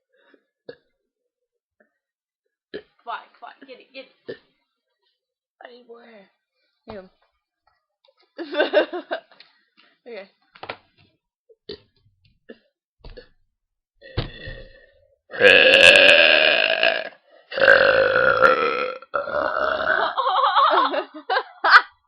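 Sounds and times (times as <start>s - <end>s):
girl burping: 15.3s - 20.3s.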